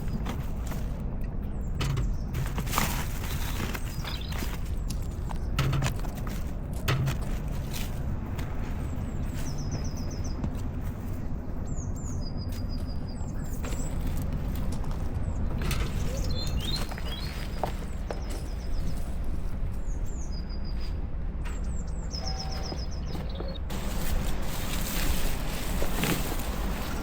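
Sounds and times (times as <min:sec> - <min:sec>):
songbirds chirping: 0:00.0 - 0:27.0
bird trills: 0:21.6 - 0:23.7.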